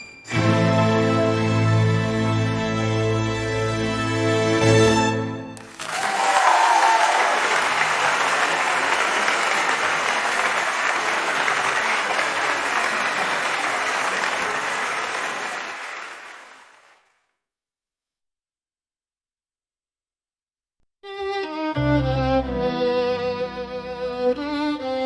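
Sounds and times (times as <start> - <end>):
audience applauding: 5.6 - 17.2.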